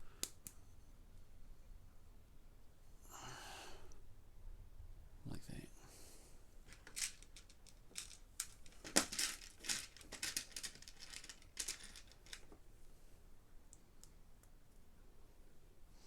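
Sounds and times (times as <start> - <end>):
plastic parts clicking and clattering: 6.7 - 12.6.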